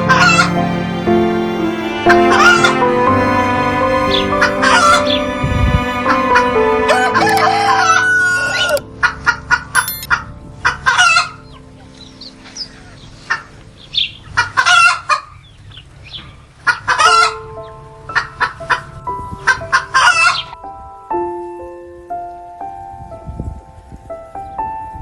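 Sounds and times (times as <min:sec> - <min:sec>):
background music: 0:00.0 - 0:14.2.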